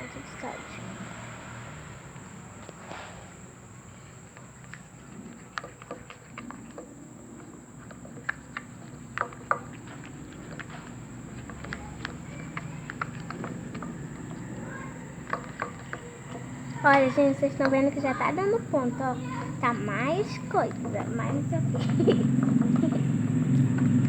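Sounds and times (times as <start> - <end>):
slime stirred in a bowl: 2.4 - 24.0
thin steady high tone: 11.6 - 24.0.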